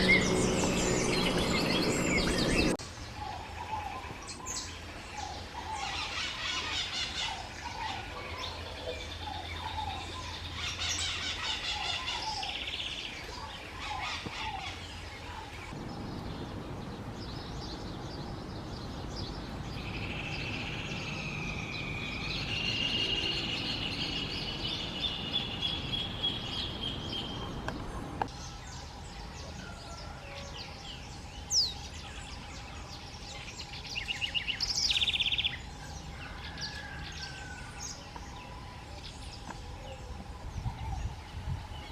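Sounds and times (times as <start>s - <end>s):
songbirds chirping and singing: 0.0s - 2.8s.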